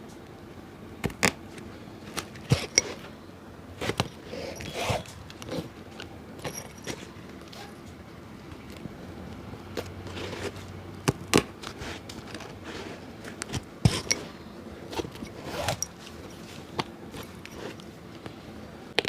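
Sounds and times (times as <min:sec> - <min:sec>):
scraping on a shoe: 0:02.2 - 0:03.1, 0:03.8 - 0:05.7, 0:09.8 - 0:10.7, 0:11.6 - 0:18.0.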